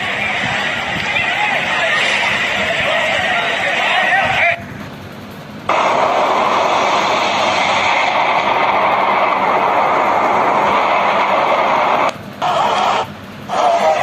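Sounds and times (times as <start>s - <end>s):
heavy wind and rain: 0.0s - 5.1s.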